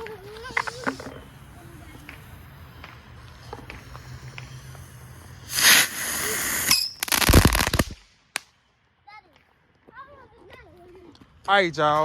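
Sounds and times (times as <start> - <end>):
firecrackers popping: 0.0 - 8.7.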